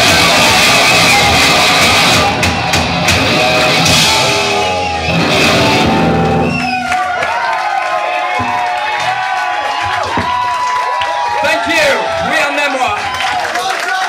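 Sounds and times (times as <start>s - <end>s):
rock band playing live: 0.0s - 7.1s.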